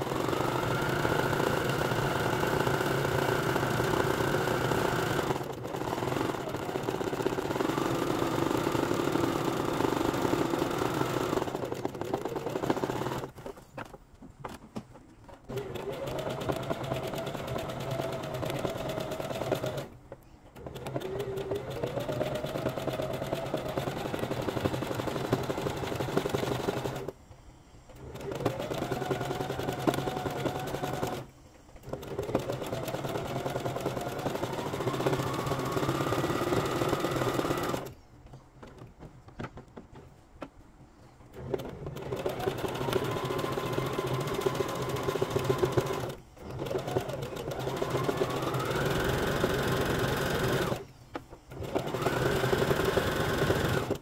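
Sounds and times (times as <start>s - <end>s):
sewing machine stitching: 0.0s - 13.4s, 15.5s - 20.0s, 20.6s - 27.1s, 28.0s - 38.0s, 41.3s - 50.9s, 51.5s - 54.0s.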